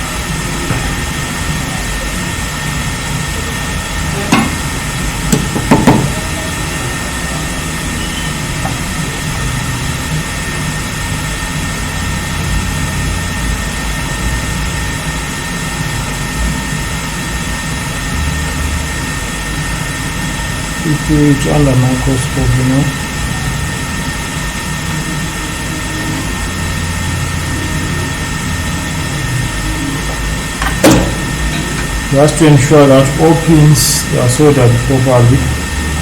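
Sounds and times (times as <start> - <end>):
fan-like whir of equipment: 0.0 - 36.0
handling knocks: 30.1 - 32.0.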